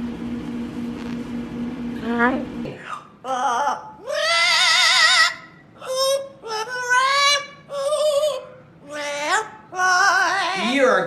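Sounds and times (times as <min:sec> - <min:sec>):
parrot singing wavering notes: 0:03.2 - 0:10.9.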